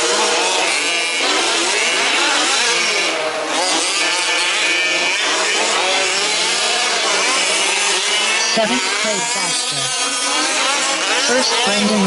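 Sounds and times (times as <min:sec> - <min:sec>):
small two-stroke engines buzzing: 0:00.0 - 0:12.0.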